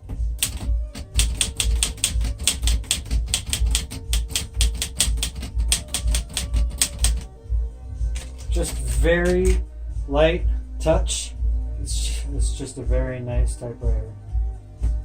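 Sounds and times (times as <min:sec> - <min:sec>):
manual typewriter typing: 0:00.4 - 0:07.3, 0:08.2 - 0:09.6.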